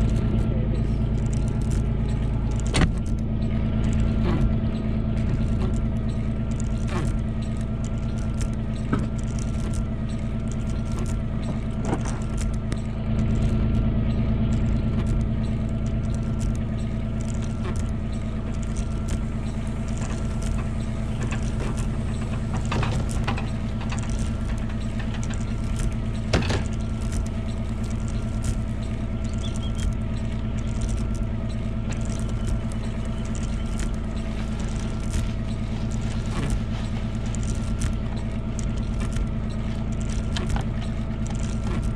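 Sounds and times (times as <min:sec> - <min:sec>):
clicks and rattles: 0:00.0 - 0:41.9
vehicle engine running: 0:00.0 - 0:41.9.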